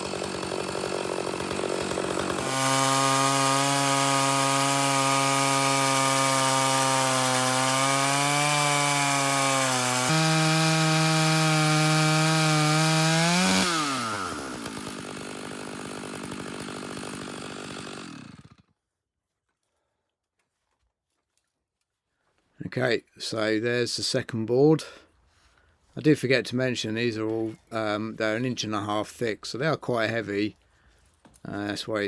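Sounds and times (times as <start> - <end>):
chainsaw cutting log: 0.0 - 18.8.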